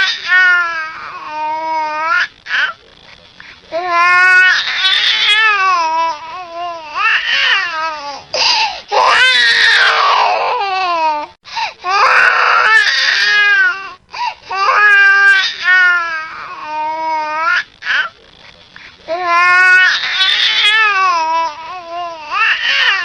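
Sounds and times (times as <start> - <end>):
infant crying: 3.7 - 18.1, 19.1 - 23.0.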